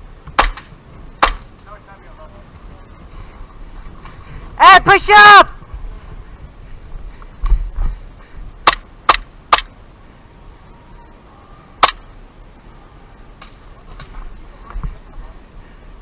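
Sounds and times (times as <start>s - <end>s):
airsoft gun shots: 0.4s - 1.5s, 8.6s - 9.7s, 11.8s - 12.0s.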